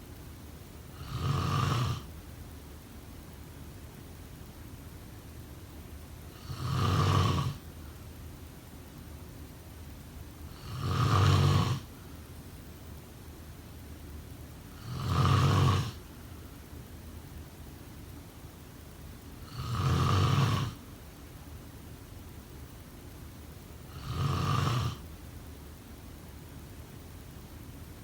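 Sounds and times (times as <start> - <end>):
person snoring: 0.9 - 2.1, 6.4 - 7.6, 10.6 - 11.9, 14.8 - 16.0, 19.5 - 20.8, 23.9 - 25.0.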